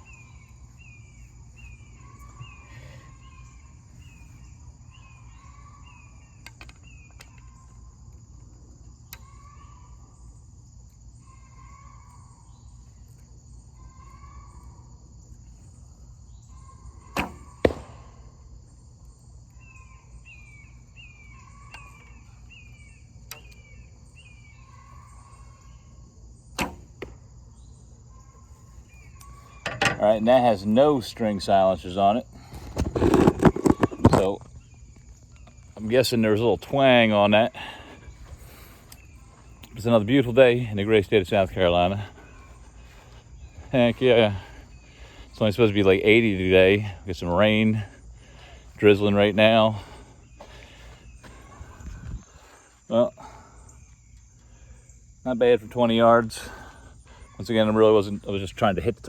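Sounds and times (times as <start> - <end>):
bird chirps: 0.0 - 59.0
insect drone: 0.0 - 59.0
arrow striking target: 17.2 - 18.2, 26.6 - 27.2
bow string release crack: 26.5 - 27.2.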